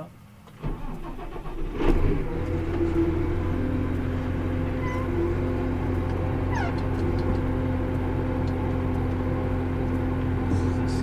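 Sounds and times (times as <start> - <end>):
tractor diesel engine drone: 0.6 - 11.0
short falling squeak: 4.8 - 5.2, 6.5 - 6.8.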